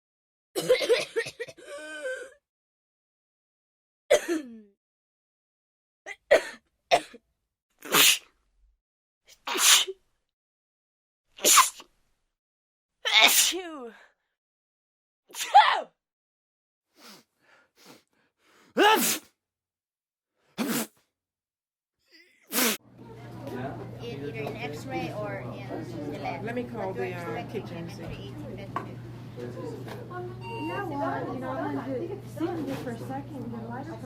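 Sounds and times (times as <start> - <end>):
person sneezing: 7.8 - 8.3, 9.4 - 10.0, 11.4 - 11.9, 13.1 - 13.7, 15.3 - 15.9, 18.8 - 19.3, 20.6 - 20.9, 22.5 - 22.8.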